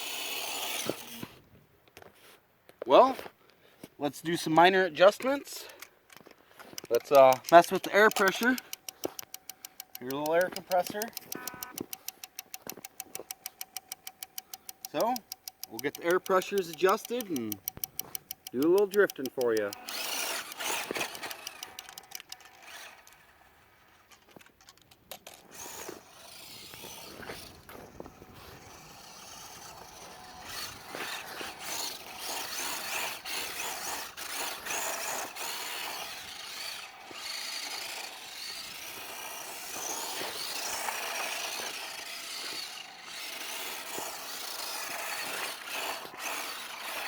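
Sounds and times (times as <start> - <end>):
small electric motor whirring: 0.0 - 1.4, 6.6 - 24.4, 25.1 - 47.0
clicks: 5.6 - 23.2.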